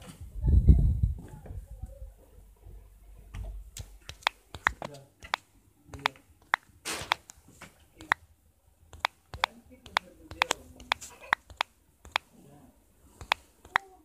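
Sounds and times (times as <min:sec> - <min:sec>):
sharp clicks and taps: 0:03.8 - 0:07.4, 0:08.0 - 0:08.2, 0:08.9 - 0:12.3, 0:13.2 - 0:14.0.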